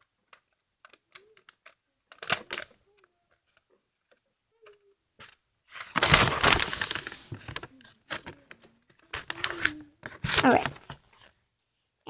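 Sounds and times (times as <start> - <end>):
paper rustling being folded: 5.7 - 11.4.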